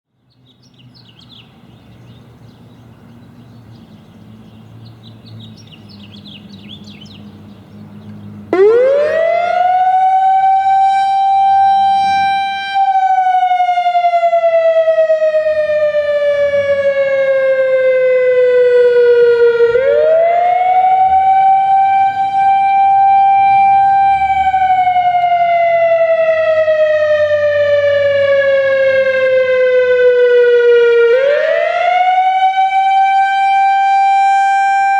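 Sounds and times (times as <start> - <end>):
outdoor warning siren wailing: 8.5 - 34.9.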